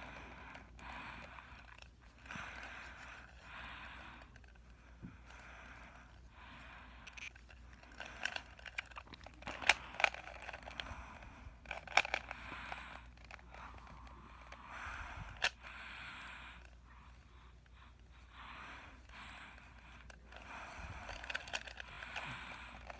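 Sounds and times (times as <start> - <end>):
puzzle cube clicking and scraping: 0.0 - 4.7, 7.0 - 14.6, 15.3 - 15.7, 19.2 - 22.9
sharp plastic clacks: 7.0 - 10.9, 11.6 - 14.6, 15.4 - 15.7, 19.8 - 22.9.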